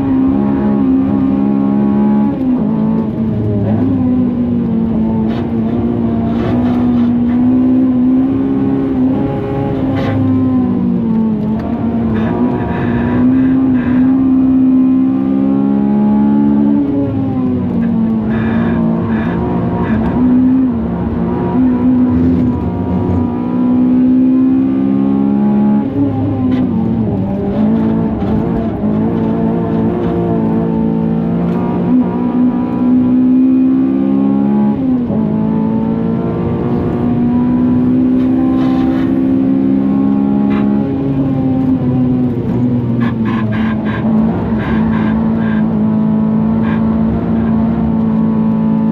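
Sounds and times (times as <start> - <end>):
car engine at full throttle: 0.0 - 48.9.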